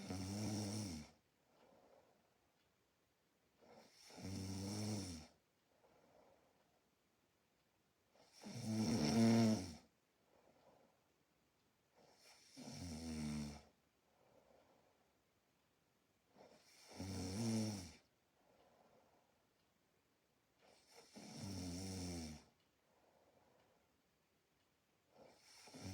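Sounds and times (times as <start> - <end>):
person snoring: 0.0 - 1.2, 3.7 - 5.4, 8.2 - 9.8, 12.2 - 13.7, 16.4 - 18.0, 20.8 - 22.5, 25.2 - 25.9.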